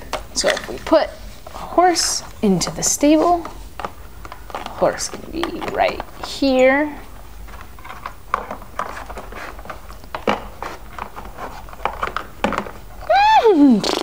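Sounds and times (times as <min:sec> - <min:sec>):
person's voice: 0:00.3 - 0:03.6, 0:04.6 - 0:07.1.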